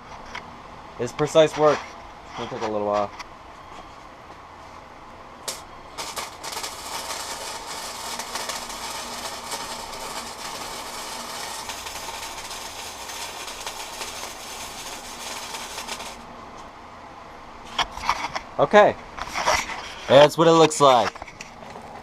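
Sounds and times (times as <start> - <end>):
welding arc crackling: 5.4 - 16.7.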